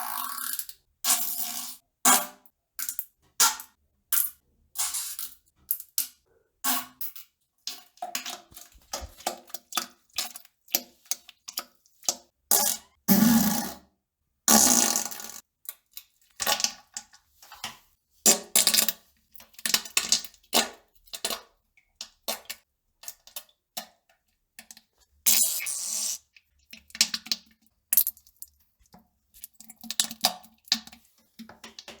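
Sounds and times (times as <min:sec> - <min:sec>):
fart sounds: 0:13.1 - 0:13.8.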